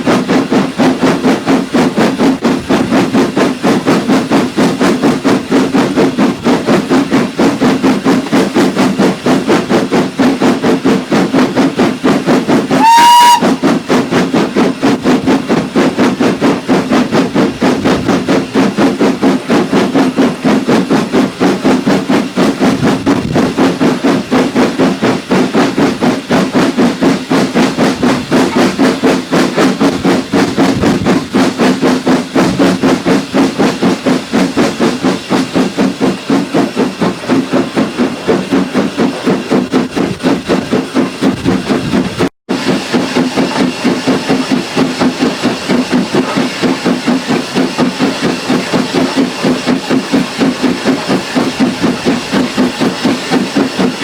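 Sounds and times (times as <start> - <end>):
steam locomotive exhaust beats: 0.0 - 54.0
steam whistle blast: 12.7 - 13.7.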